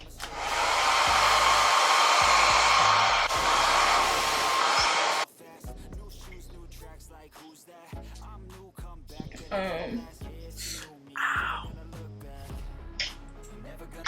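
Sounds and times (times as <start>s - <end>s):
hair dryer blowing: 0.0s - 5.3s
hip-hop music: 0.0s - 14.0s.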